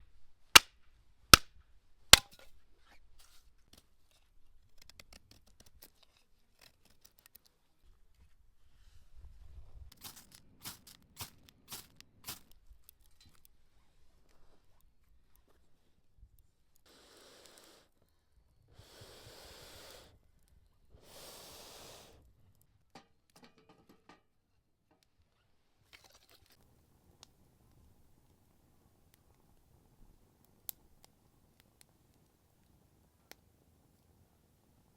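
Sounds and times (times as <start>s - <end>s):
campfire crackling and popping: 10.0s - 12.6s, 26.6s - 34.9s
puffs of air blown: 18.7s - 20.2s, 21.0s - 22.3s.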